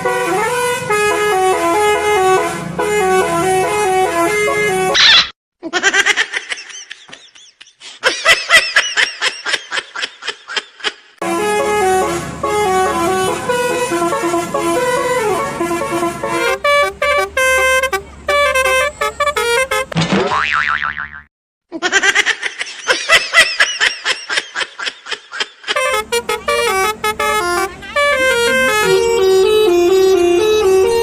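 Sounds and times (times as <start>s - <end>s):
musical bus horn tune: 0.0s - 5.0s, 11.2s - 20.0s, 25.7s - 31.0s.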